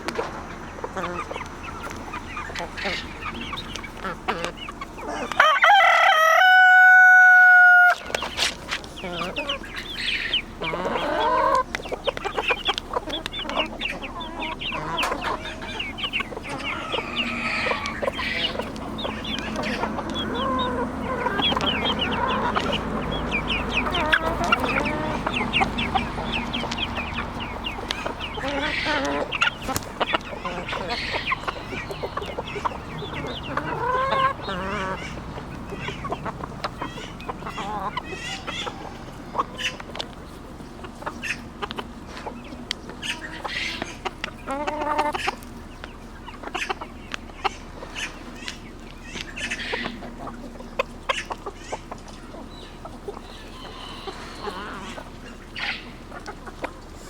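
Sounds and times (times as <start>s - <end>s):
chickens clucking: 0.0s - 57.0s
rooster crowing: 5.0s - 8.0s, 14.4s - 26.6s, 37.5s - 39.8s, 53.3s - 54.9s.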